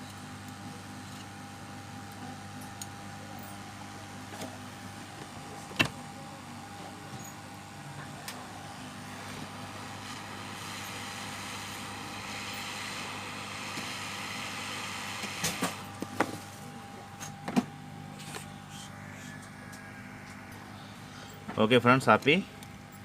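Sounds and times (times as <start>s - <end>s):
hot-air station hissing: 0.0s - 23.0s
low hum: 17.8s - 21.6s.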